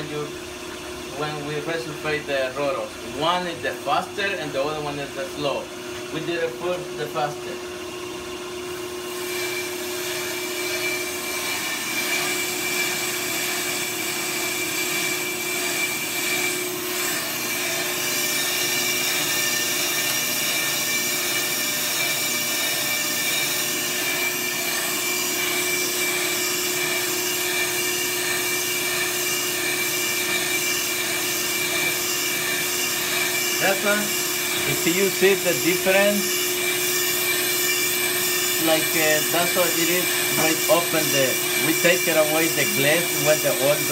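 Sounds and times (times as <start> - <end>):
lathe motor hum: 0.0 - 43.9
cutting bit scraping hiss: 9.2 - 43.9.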